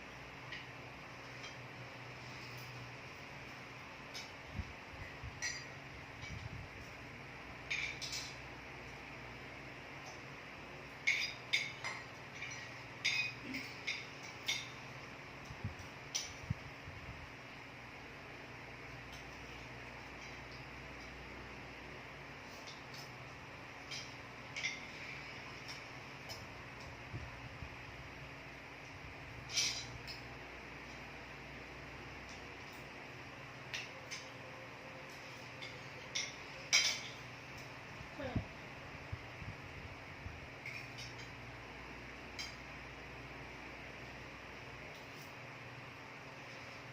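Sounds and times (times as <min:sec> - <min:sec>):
cutlery clinking against plates: 0:05.4 - 0:06.4, 0:07.7 - 0:08.4, 0:10.9 - 0:15.0, 0:22.5 - 0:26.5, 0:29.5 - 0:30.3, 0:33.7 - 0:34.4, 0:35.1 - 0:37.7, 0:40.6 - 0:41.4.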